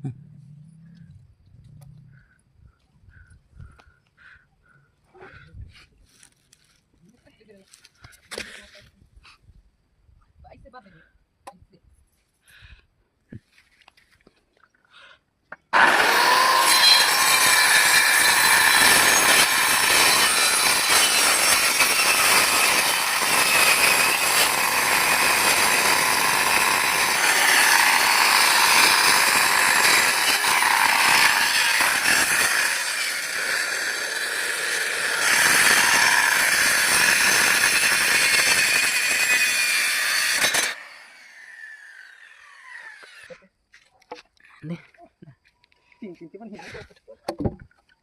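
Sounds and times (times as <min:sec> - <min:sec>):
saw motor winding down: 0:15.7 - 0:43.3
electric saw cutting wood: 0:15.7 - 0:43.4.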